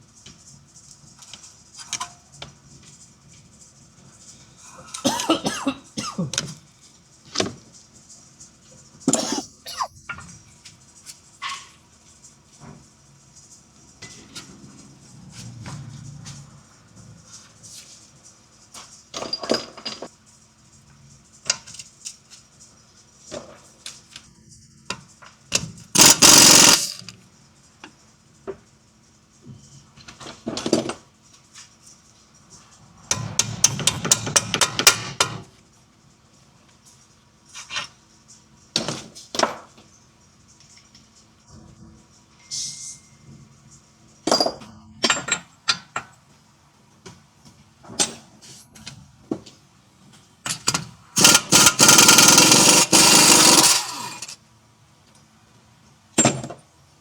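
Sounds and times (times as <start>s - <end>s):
loud noisy burst: 26.0s - 27.0s, 51.2s - 54.4s
clanks and knocks on metal: 50.5s - 54.4s.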